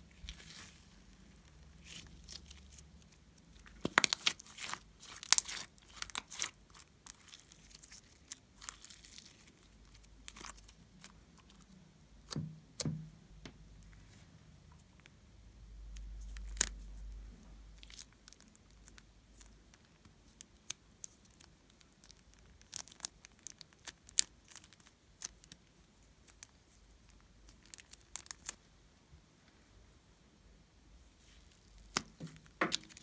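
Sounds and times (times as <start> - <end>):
slime sticky clicks and crackles: 3.6 - 11.6, 26.2 - 28.6.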